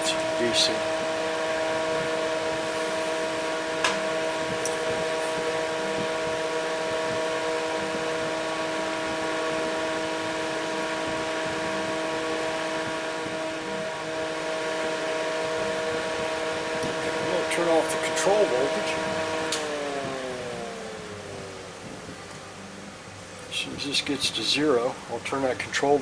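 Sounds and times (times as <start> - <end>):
cooling fan whirring: 0.0 - 26.0.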